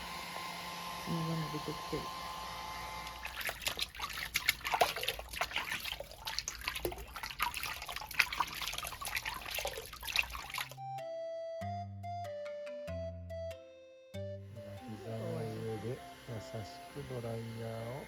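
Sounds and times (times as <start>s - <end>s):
water splashing and dripping: 3.0s - 10.8s
short wet crackles: 3.1s - 10.8s.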